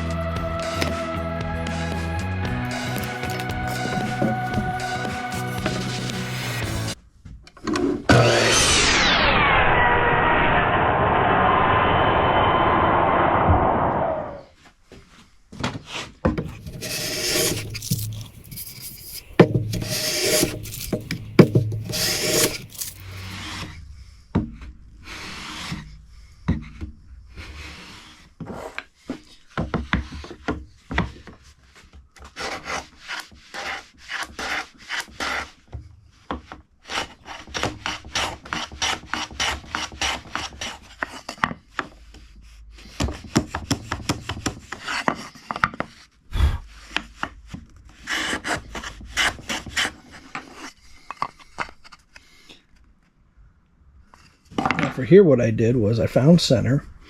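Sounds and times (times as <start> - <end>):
hand tool scraping wood: 2.7 - 7.0, 15.8 - 23.8, 26.5 - 52.4.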